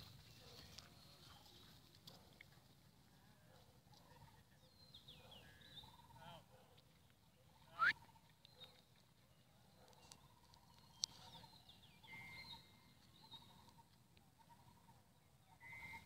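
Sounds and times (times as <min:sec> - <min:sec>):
faint bird chirps: 0:07.4 - 0:16.0.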